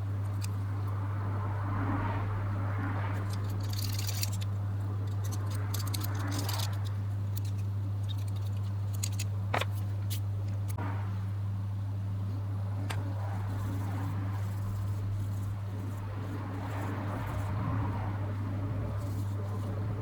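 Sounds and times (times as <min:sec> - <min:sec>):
low electrical hum: 0:00.0 - 0:20.0
lens parts clicking and scraping: 0:00.2 - 0:00.6, 0:03.2 - 0:10.8.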